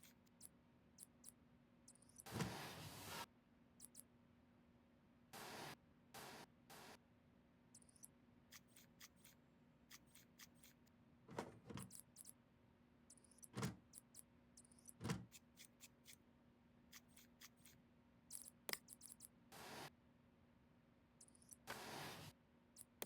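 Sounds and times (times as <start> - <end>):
computer hardware clicks and knocks: 11.5 - 12.3.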